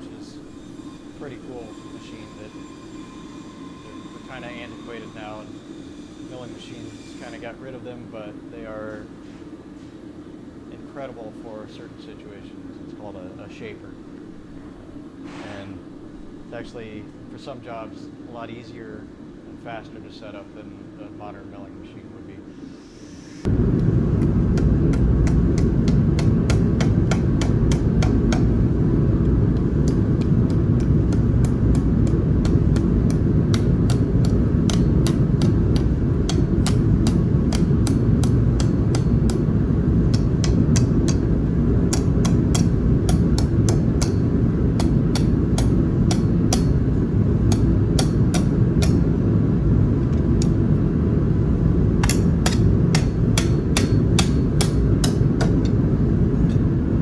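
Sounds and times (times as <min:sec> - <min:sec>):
power hammer motor rumbling: 0:23.5 - 0:56.8
hammer dies striking steel: 0:52.0 - 0:55.8.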